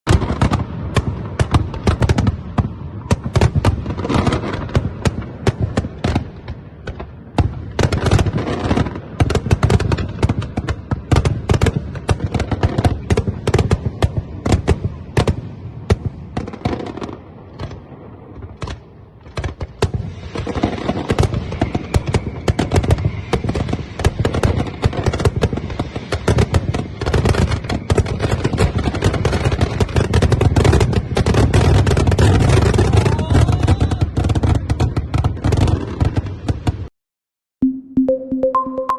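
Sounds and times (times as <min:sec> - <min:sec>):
fireworks bangs and booms: 0:00.1 - 0:36.9.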